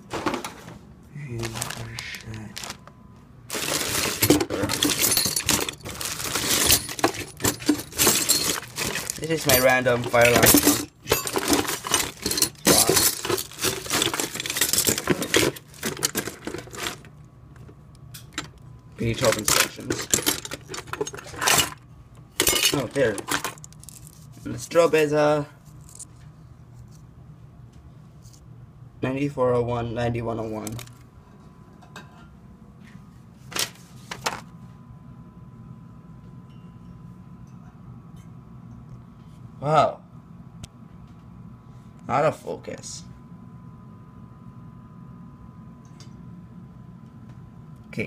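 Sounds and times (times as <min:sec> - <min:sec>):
steady low hum: 0:00.0 - 0:48.0
metal and plastic pieces rattling: 0:03.5 - 0:17.1, 0:18.4 - 0:21.8, 0:22.4 - 0:24.3, 0:25.8 - 0:26.1.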